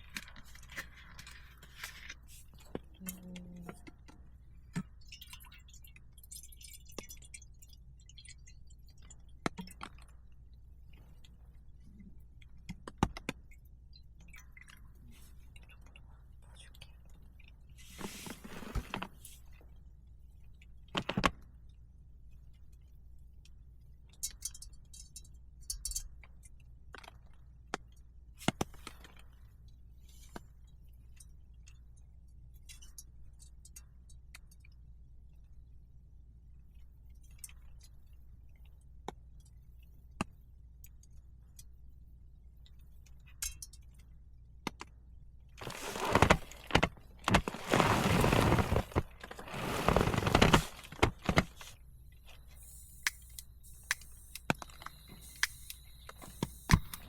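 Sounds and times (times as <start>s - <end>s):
loud rustling and clattering: 45.6s - 51.7s.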